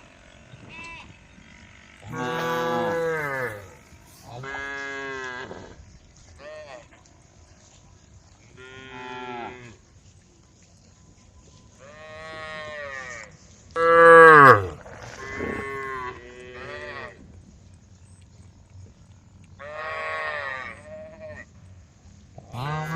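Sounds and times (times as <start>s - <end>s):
cows mooing: 2.0s - 5.5s, 13.8s - 17.1s, 22.5s - 22.9s.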